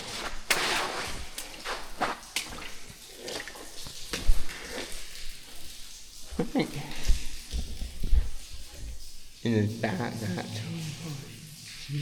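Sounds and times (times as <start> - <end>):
footsteps on wet floor: 0.0 - 9.4.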